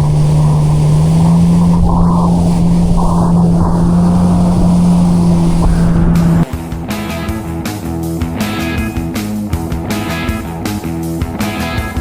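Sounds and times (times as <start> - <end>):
motor drone: 0.0 - 6.5
rock music with guitar: 6.5 - 12.0.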